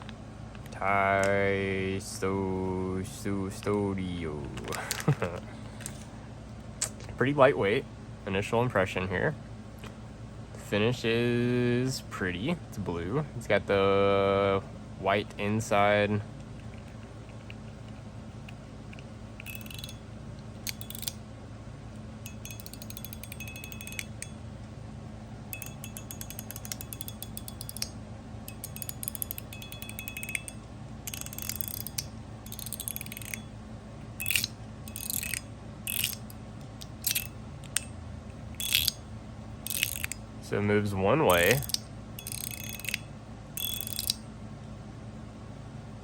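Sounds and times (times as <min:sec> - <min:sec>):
fidget slider clicking: 0:18.5 - 0:20.0, 0:20.6 - 0:21.2, 0:22.3 - 0:24.3, 0:25.6 - 0:33.4, 0:34.2 - 0:37.9, 0:38.6 - 0:39.0, 0:39.6 - 0:40.2, 0:41.3 - 0:44.2.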